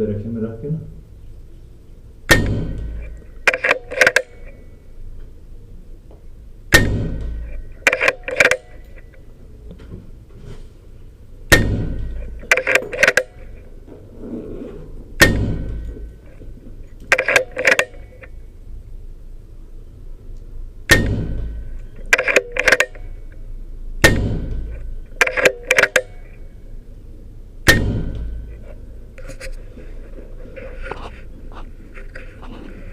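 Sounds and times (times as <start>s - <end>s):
air rifle shots: 2.3s - 4.6s, 6.7s - 9.1s, 11.5s - 13.7s, 15.2s - 16.4s, 17.1s - 18.2s, 20.9s - 23.2s, 24.0s - 26.4s, 27.6s - 28.6s
metallic clicks of rifle action: 2.3s - 4.7s, 7.2s - 9.2s, 11.5s - 13.7s, 15.2s - 18.4s, 20.4s - 23.4s, 24.0s - 26.4s.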